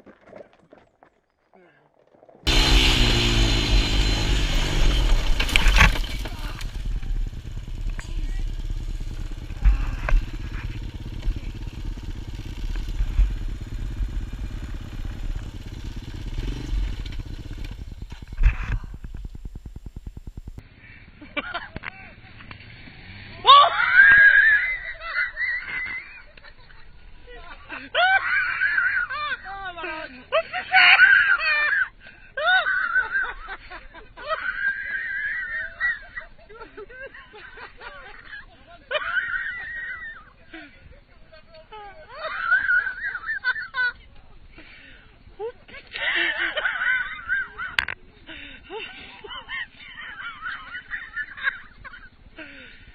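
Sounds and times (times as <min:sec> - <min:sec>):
atv engine running: 0:02.5 - 0:23.4, 0:40.8 - 0:52.9
high-pitched human shrieks: 0:23.4 - 0:25.9.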